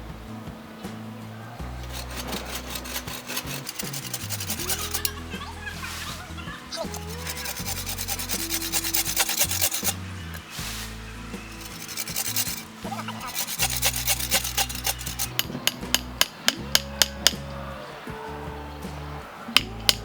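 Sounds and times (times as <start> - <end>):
hand tool rasping on wood: 1.8 - 5.2, 6.7 - 15.5.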